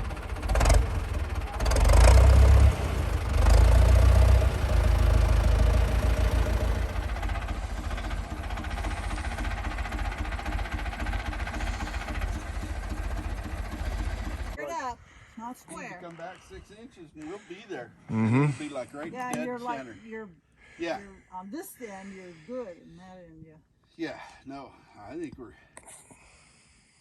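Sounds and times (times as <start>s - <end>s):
gasoline engine revving and idling: 0.0s - 14.6s.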